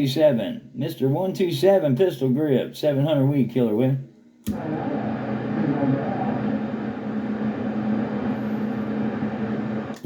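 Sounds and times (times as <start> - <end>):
radio static hiss: 4.6 - 6.9.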